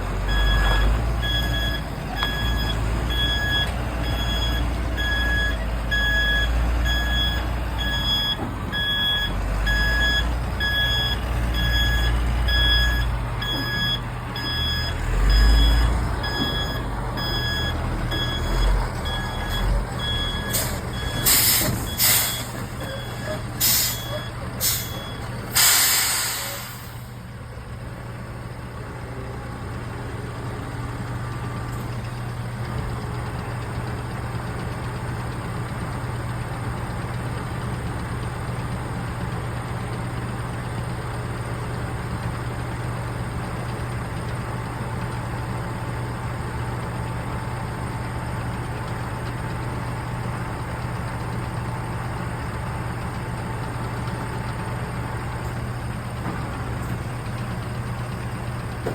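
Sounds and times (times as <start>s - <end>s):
diesel truck engine idling: 0.0s - 58.9s
air brake hiss: 20.5s - 22.5s, 23.6s - 27.2s.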